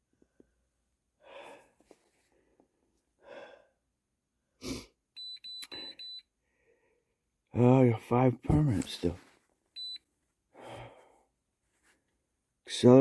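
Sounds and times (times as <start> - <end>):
soft breaths: 0.1 - 3.8, 10.5 - 12.1
loud puff of breath: 4.6 - 4.9.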